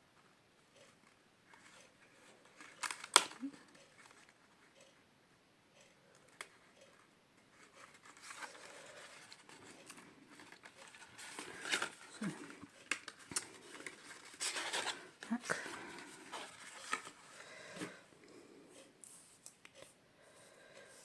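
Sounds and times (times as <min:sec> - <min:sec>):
paper rustling: 0:07.5 - 0:18.0.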